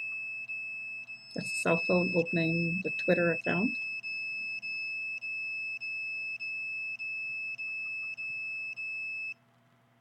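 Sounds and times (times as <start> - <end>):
high-pitched alarm beeping: 0.0 - 9.4.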